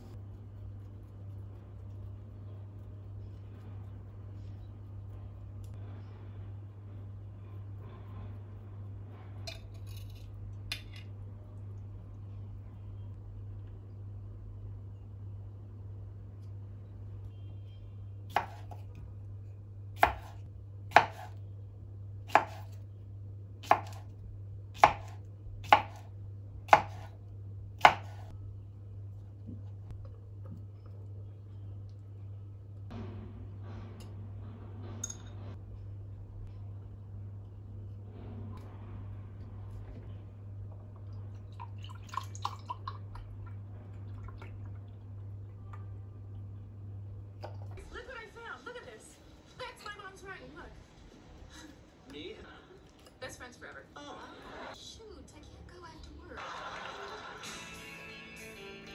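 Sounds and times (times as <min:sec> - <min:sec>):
low steady hum: 0:00.0 - 0:57.4
knife chopping on cutting board: 0:18.3 - 0:18.8, 0:20.0 - 0:21.4, 0:22.3 - 0:22.8, 0:23.6 - 0:24.0, 0:24.8 - 0:26.1, 0:26.7 - 0:27.2, 0:27.8 - 0:28.3.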